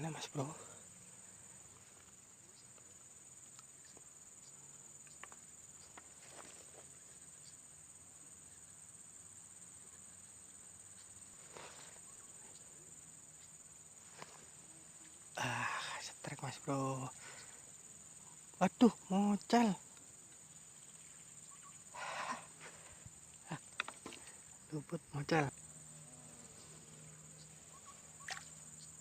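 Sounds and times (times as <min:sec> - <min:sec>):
small ticks and rustles: 0:00.0 - 0:29.0
high-pitched insect trilling: 0:07.1 - 0:29.0.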